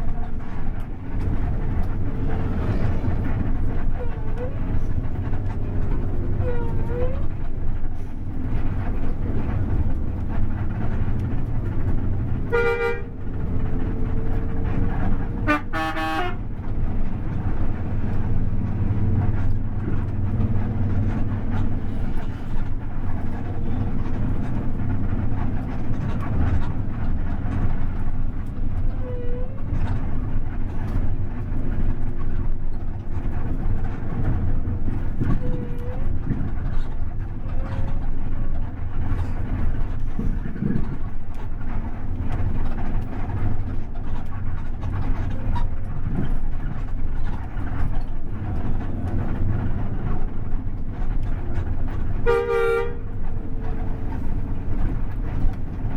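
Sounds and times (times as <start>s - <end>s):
bus engine rumble: 0.0s - 55.9s
road noise: 0.0s - 55.9s
bus horn blasts: 12.3s - 13.2s, 15.2s - 16.6s, 52.2s - 53.4s.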